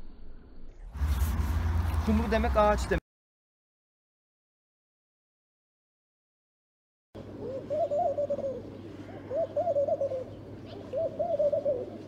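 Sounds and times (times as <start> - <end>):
dove cooing: 7.2 - 12.0.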